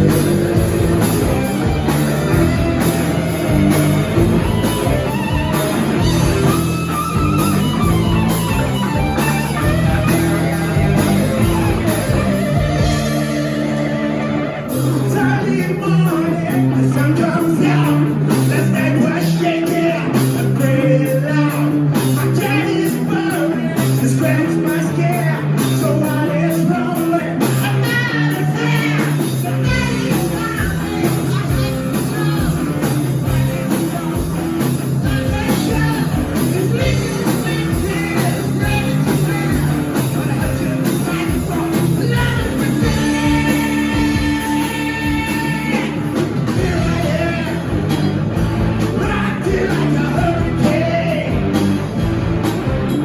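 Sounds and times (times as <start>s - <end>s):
drum beat: 0.0s - 13.3s
guitar: 0.0s - 53.0s
heavy bass line: 0.0s - 53.0s
rock singing: 0.0s - 53.0s.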